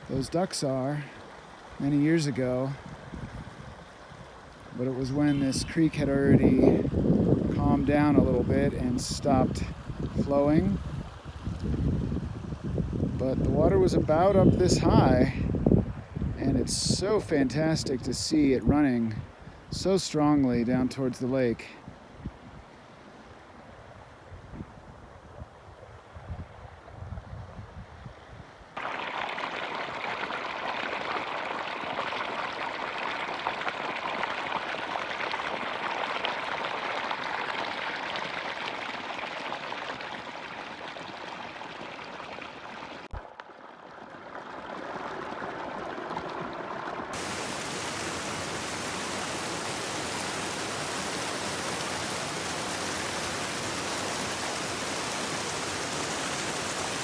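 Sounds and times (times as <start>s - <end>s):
creek water rushing: 0.0s - 11.6s, 43.8s - 57.0s
wind buffeting microphone: 5.6s - 17.0s.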